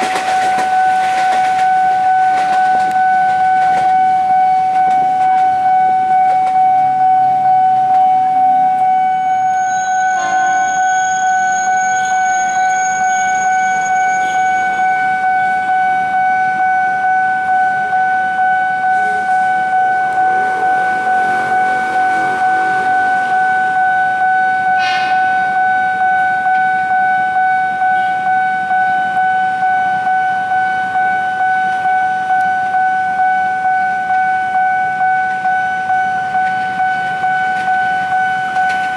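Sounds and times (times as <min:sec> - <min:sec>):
level-crossing warning bell ringing: 0:00.0 - 0:38.9.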